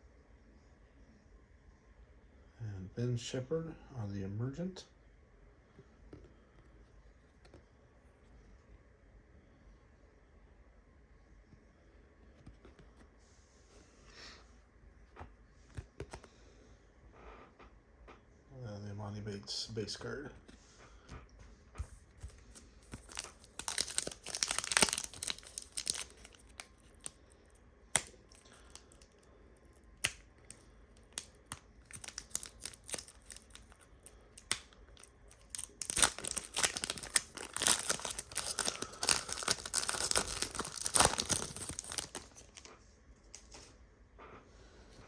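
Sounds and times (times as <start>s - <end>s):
foil wrappers tearing and crinkling: 22.2s - 42.7s.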